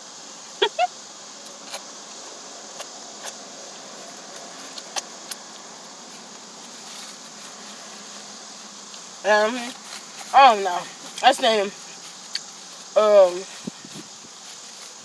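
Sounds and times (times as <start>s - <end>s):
steady background hiss: 0.0s - 15.0s
person chewing food: 11.8s - 13.0s.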